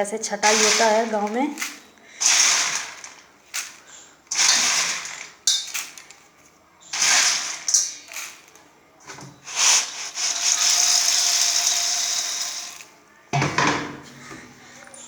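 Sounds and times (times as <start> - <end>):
dry maize rattling in a mortar: 0.4 - 8.6, 9.4 - 13.0.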